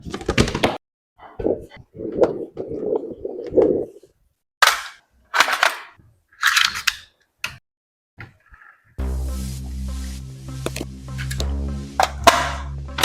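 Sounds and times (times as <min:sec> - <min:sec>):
low buzzing with clicks: 0:09.0 - 0:13.0.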